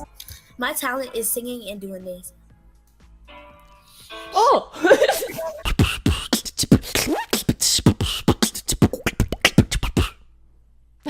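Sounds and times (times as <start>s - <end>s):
person beatboxing: 5.4s - 10.2s.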